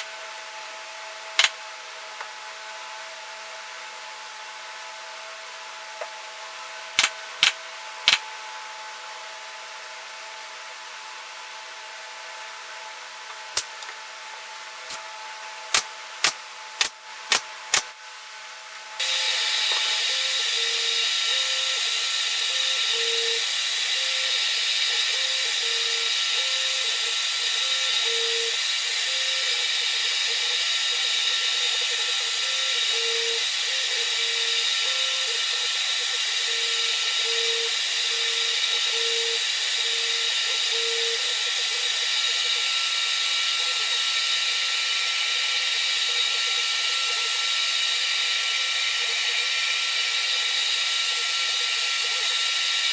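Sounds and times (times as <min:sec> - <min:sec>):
power tool running: 0:19.0 - 0:52.9.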